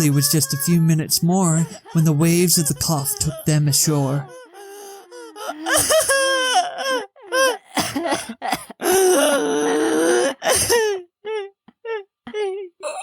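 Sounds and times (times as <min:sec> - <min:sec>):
sobbing laugh-like cries: 0:00.0 - 0:13.0
person coughing: 0:07.8 - 0:09.4.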